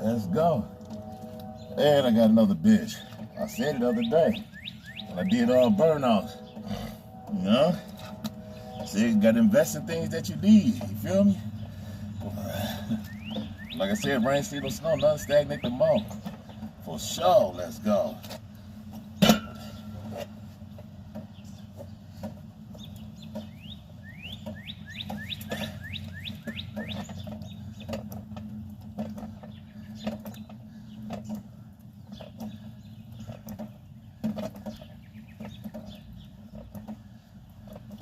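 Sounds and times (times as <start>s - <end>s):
bird calling high sweeping notes: 0.0s - 11.8s
steady low hum: 0.0s - 38.0s.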